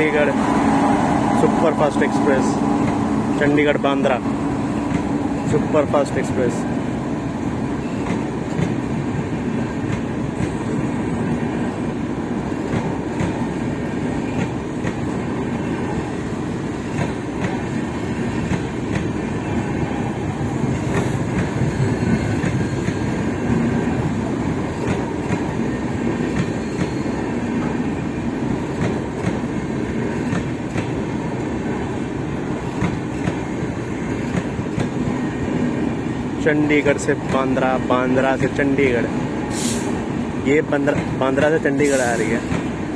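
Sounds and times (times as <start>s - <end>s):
train coaches rumbling past: 0.0s - 42.9s.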